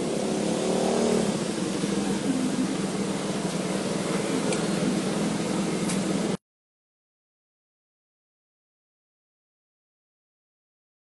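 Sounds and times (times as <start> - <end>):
motorcycle engine running: 0.0 - 6.4.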